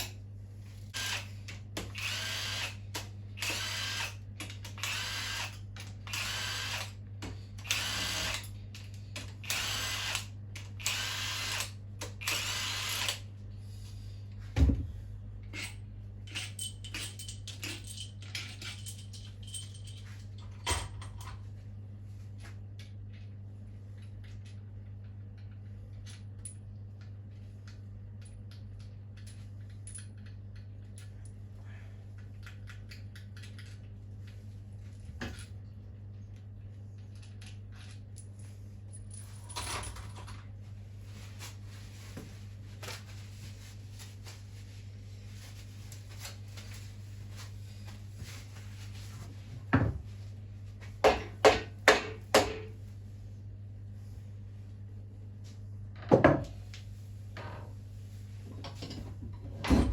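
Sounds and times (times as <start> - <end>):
steady low hum: 0.0 - 59.9
tools and metal parts handled: 15.4 - 21.4.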